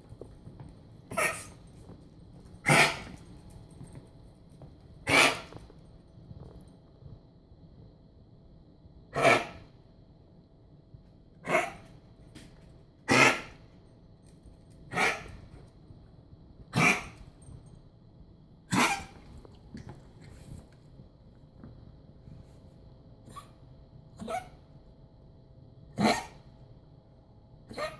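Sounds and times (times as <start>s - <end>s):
dog coughing: 1.1s - 1.6s, 2.6s - 3.1s, 5.1s - 5.5s, 9.2s - 9.6s, 13.1s - 13.6s, 14.9s - 15.3s, 16.7s - 17.2s, 18.7s - 19.2s, 26.0s - 26.4s.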